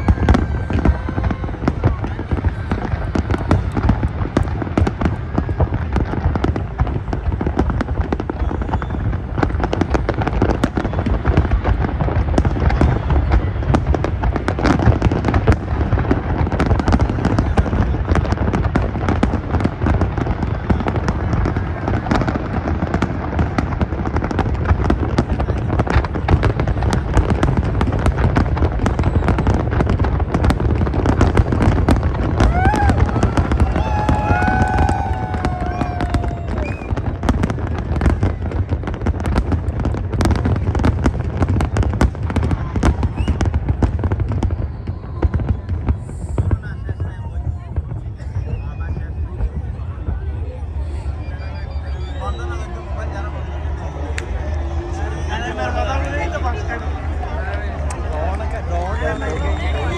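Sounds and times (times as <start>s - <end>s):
fireworks bangs: 0.0s - 59.9s.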